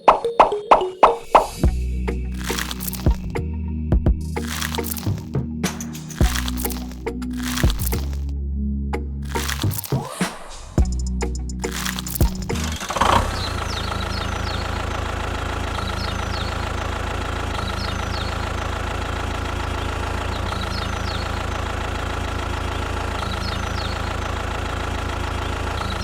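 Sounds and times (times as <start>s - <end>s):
engine idling: 10.8s - 26.0s.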